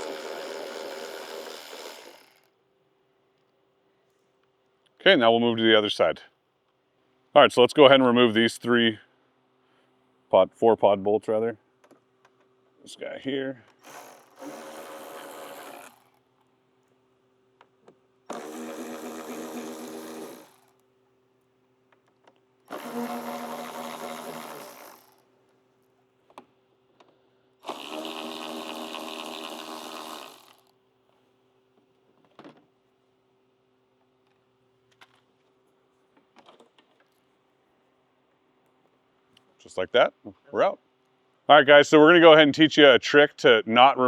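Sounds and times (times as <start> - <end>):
power driver spinning: 0.0 - 2.5, 13.7 - 16.2, 18.3 - 20.7, 22.7 - 25.3, 27.6 - 30.7.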